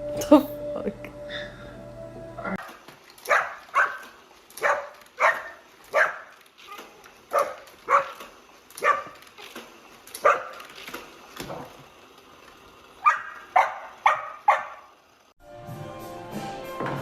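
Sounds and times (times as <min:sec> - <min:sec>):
dog barking: 0:02.6 - 0:06.4, 0:07.3 - 0:09.2, 0:10.2 - 0:10.6, 0:13.0 - 0:14.9.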